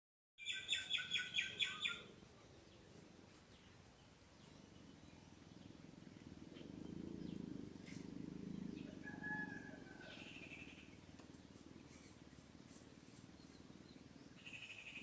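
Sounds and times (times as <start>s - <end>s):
faint bird chirps: 0.4s - 15.0s
cat purring: 5.1s - 9.0s.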